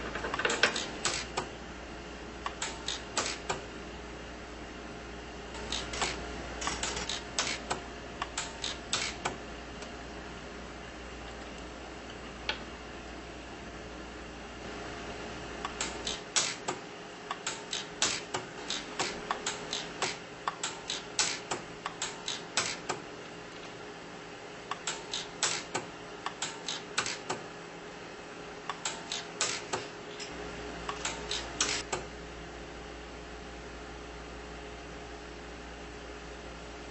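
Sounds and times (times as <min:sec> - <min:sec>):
pulse welder snapping: 0:00.3 - 0:01.5, 0:02.5 - 0:03.6, 0:05.5 - 0:09.4, 0:15.6 - 0:23.1, 0:24.7 - 0:27.5, 0:28.7 - 0:30.3, 0:30.9 - 0:32.1.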